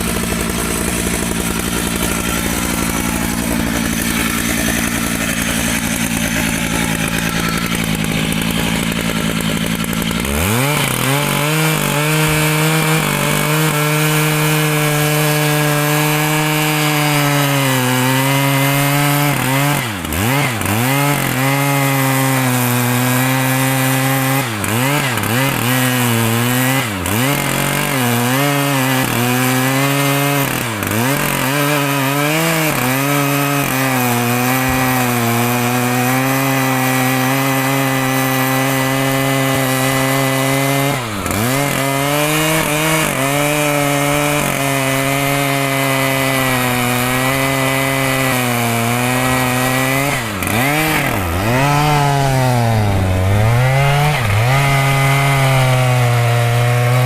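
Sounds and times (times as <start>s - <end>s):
chainsaw cutting wood: 0.0s - 57.0s.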